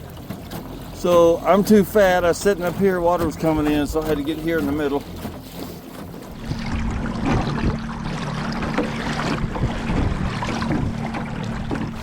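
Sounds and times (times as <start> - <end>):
steady motor hum: 0.0 - 12.0
water splashing against boat: 0.0 - 12.0
wind buffeting microphone: 6.0 - 12.0.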